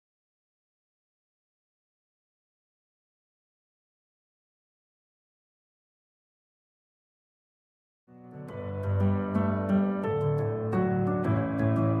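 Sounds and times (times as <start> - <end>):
instrumental background music: 8.3 - 12.0.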